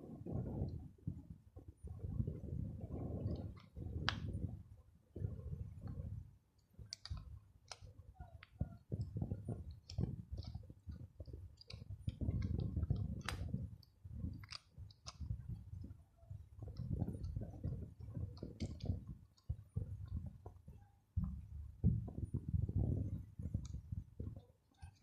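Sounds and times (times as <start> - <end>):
small clicks and taps: 3.2 - 4.5, 6.6 - 25.0.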